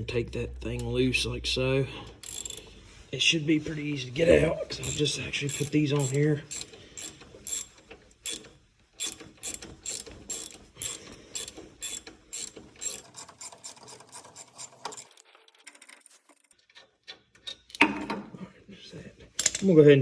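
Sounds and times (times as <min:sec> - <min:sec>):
ratchet clicking: 0:02.2 - 0:02.8, 0:04.8 - 0:16.5.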